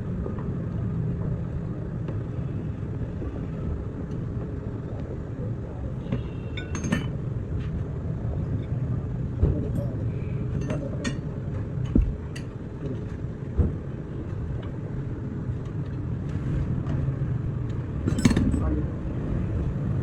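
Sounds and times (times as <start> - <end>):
steady low rumble: 0.0 - 20.0
sharp knocks on metal parts: 18.1 - 18.6.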